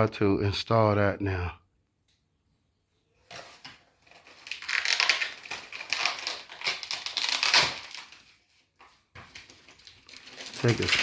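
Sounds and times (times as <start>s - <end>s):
plastic packaging rustling: 3.2s - 11.0s.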